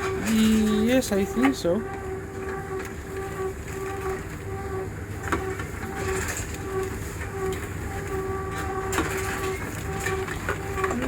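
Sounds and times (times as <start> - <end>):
pulsing machine hum: 0.0 - 11.0.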